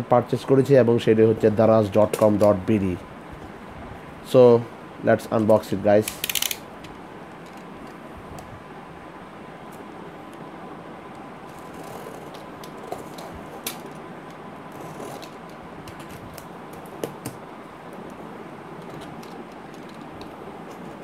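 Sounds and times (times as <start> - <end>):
steady background hiss: 0.0 - 21.0
packaging scratches and crinkles: 14.7 - 17.0.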